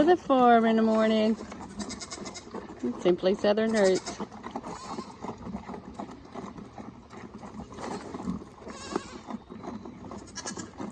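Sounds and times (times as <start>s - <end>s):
goats bleating: 0.7s - 5.4s, 8.0s - 9.4s, 10.1s - 10.9s.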